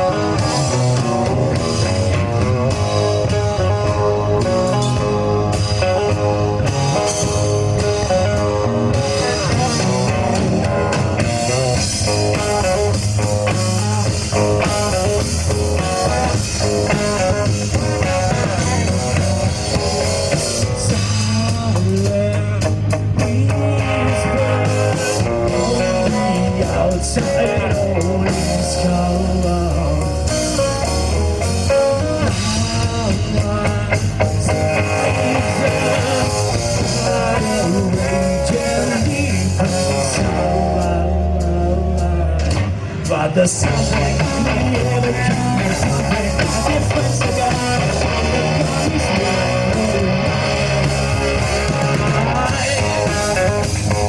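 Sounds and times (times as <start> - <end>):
bass: 0.0 - 54.0
drum kit: 0.0 - 54.0
electric guitar: 0.0 - 54.0.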